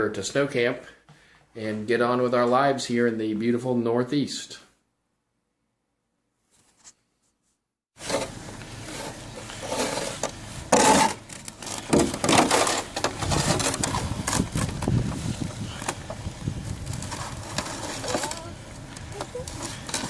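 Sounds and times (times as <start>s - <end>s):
snow being scraped: 8.0s - 20.0s.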